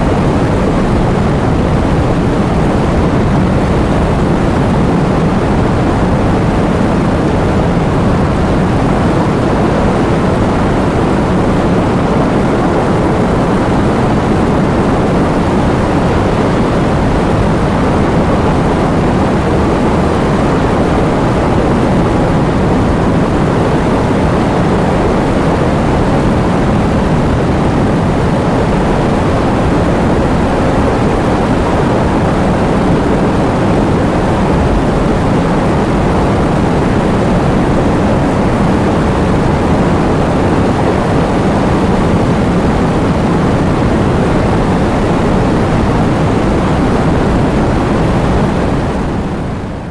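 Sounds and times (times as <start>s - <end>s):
heavy rain driven by wind: 0.0s - 49.9s.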